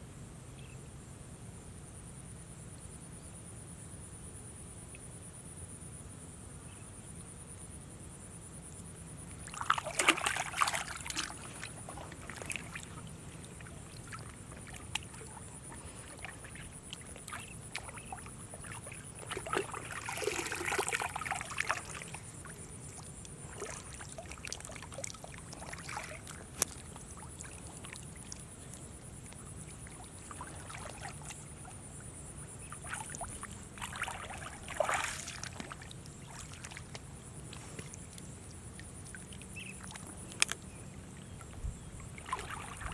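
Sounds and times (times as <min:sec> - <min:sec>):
background hiss: 0:00.0 - 0:42.9
water splashing and sloshing: 0:09.3 - 0:42.9.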